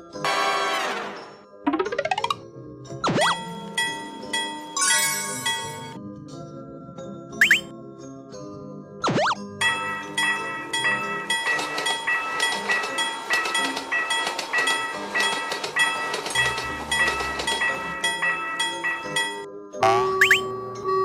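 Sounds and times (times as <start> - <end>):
level-crossing bell dinging: 9.6 - 19.5
passing train: 9.6 - 19.5.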